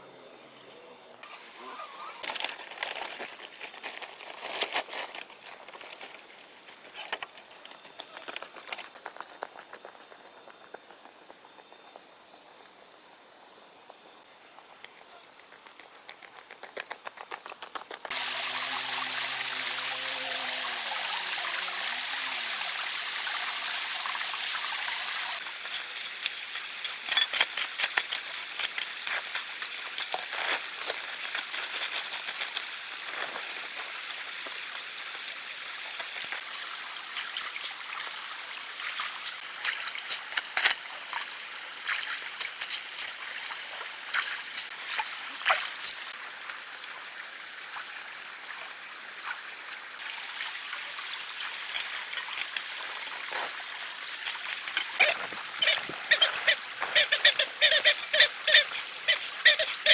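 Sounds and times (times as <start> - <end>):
running water: 18.1 - 59.9.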